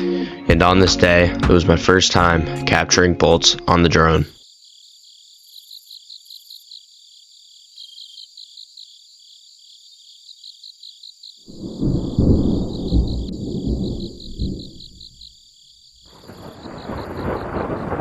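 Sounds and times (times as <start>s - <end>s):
crickets chirping: 4.2s - 18.0s
thunder rumbling: 11.5s - 15.2s, 16.1s - 18.0s.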